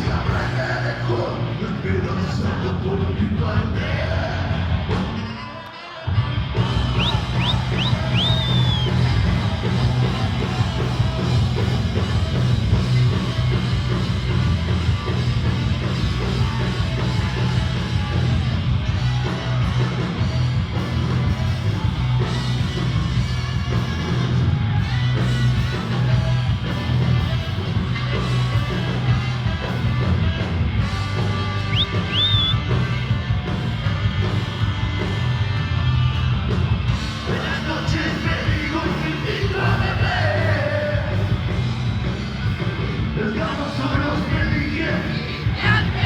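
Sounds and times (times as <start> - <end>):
rock band playing live: 0.0 - 46.0
high guitar squeals: 6.6 - 10.0, 31.5 - 32.7.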